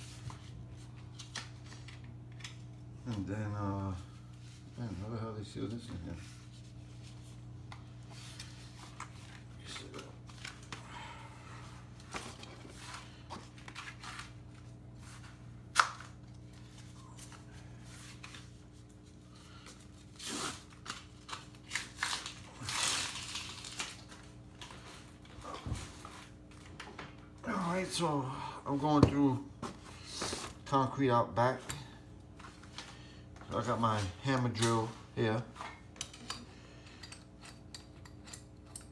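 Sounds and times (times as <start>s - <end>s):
rustling and handling noises: 0.0s - 10.9s, 11.6s - 27.3s, 28.9s - 30.7s, 31.5s - 38.9s
faint steady hum: 0.0s - 38.9s.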